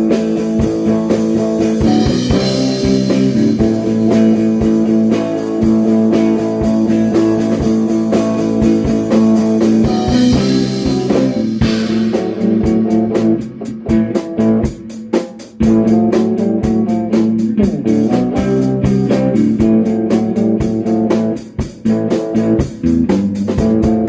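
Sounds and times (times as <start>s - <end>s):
electric guitar sustained notes: 0.0s - 14.6s
bass guitar: 0.0s - 24.0s
drum kit beat: 0.0s - 24.0s.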